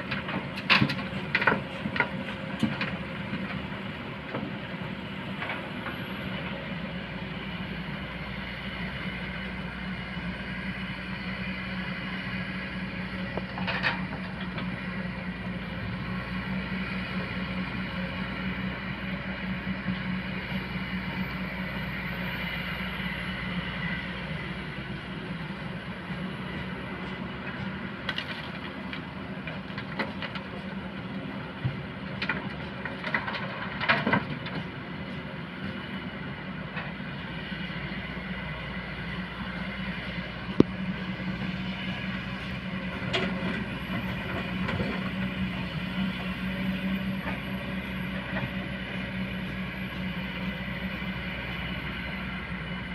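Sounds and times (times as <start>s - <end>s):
machinery clanks and knocks: 0.0s - 3.6s, 13.4s - 14.7s, 31.6s - 35.2s
excavator diesel engine running: 0.0s - 52.9s.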